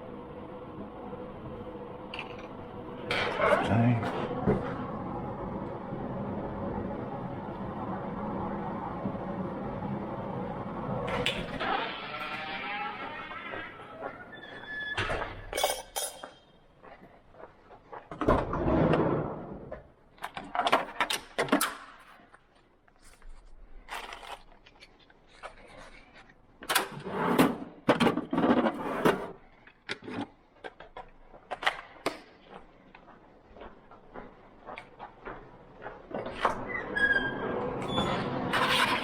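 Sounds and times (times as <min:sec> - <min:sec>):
tools scraping metal: 0:15.5 - 0:16.5.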